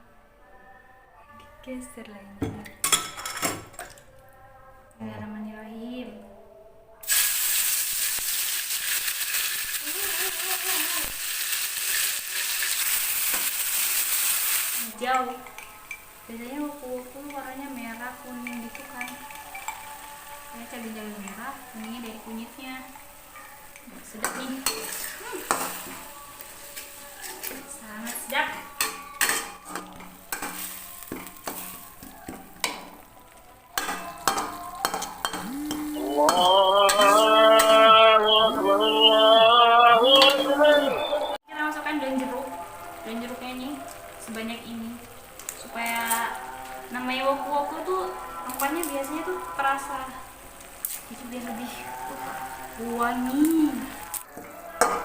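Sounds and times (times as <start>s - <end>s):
spice paste sizzling in oil: 7.0s - 37.0s, 41.5s - 55.0s
utensil clinking and scraping pan: 23.7s - 26.1s.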